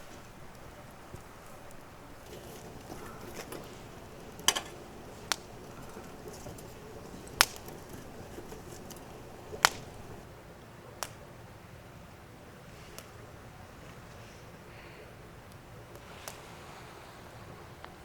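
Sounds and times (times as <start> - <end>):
sharp cracks: 0.0 - 10.2
low steady background noise: 0.0 - 18.0.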